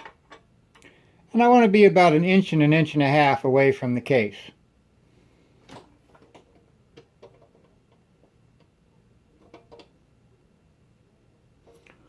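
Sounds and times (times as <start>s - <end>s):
metal parts clicking and tapping: 0.0s - 0.9s, 5.7s - 8.8s, 9.4s - 10.0s.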